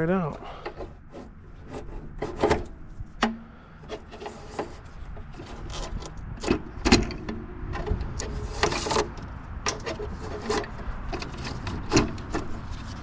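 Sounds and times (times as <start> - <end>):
wiring scraping and rubbing: 0.0 - 13.0.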